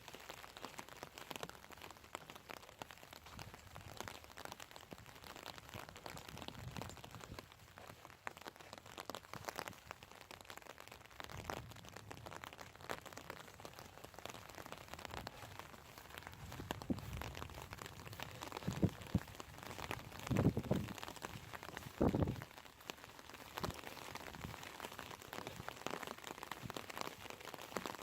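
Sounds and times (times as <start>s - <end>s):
rain falling: 0.0s - 28.0s
raindrops ticking close by: 0.0s - 28.0s.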